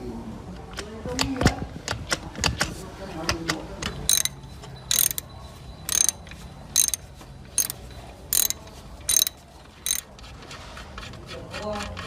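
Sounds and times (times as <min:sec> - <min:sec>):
hand tool rasping metal: 0:04.1 - 0:05.2, 0:05.9 - 0:07.0, 0:07.6 - 0:10.1.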